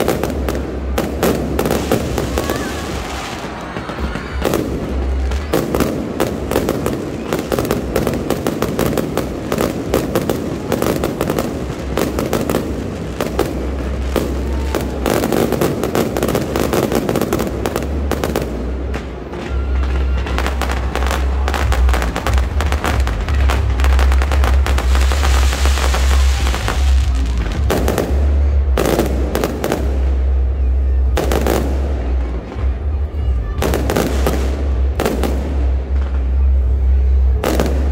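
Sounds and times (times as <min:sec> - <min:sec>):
fireworks booming: 0:00.0 - 0:37.9
fireworks crackling and popping: 0:00.0 - 0:37.9.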